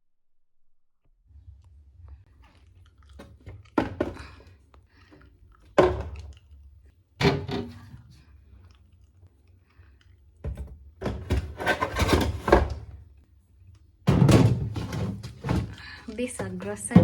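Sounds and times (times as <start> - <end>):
containers thunking on shelves: 3.8 - 4.3, 5.8 - 6.4, 7.2 - 8.0, 10.4 - 13.0, 14.1 - 17.0
fridge hum: 7.2 - 8.2, 14.0 - 17.0.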